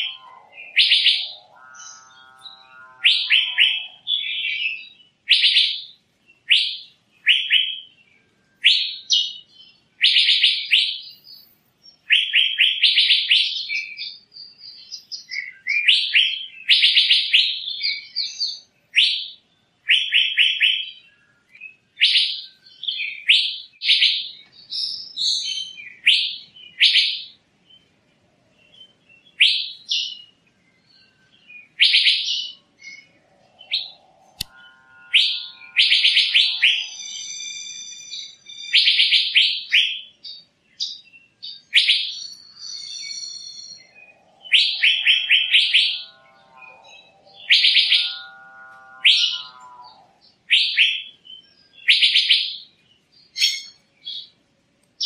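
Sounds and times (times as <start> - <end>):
bird ringing notes: 0.0 - 5.8, 32.2 - 40.2, 41.6 - 51.6
bird chattering calls: 31.8 - 40.0.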